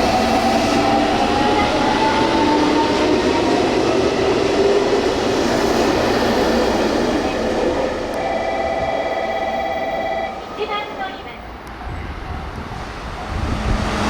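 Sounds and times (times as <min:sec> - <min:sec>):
train wheels rushing on rail: 0:00.0 - 0:14.0
level-crossing warning bell: 0:07.2 - 0:13.6.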